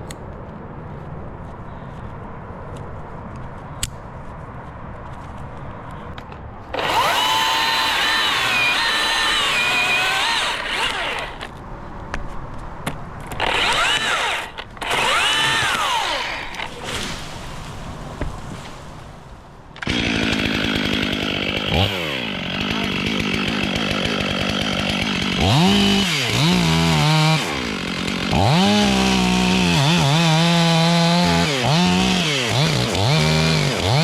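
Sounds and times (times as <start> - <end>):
electric chainsaw cutting wood: 6.7 - 11.5, 13.3 - 16.7, 19.8 - 34.0.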